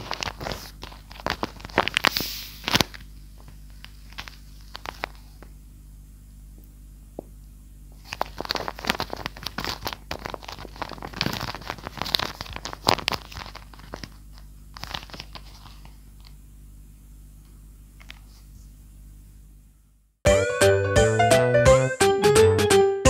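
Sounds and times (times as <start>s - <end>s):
paper and tape crinkling: 0.0s - 5.5s, 7.9s - 16.4s.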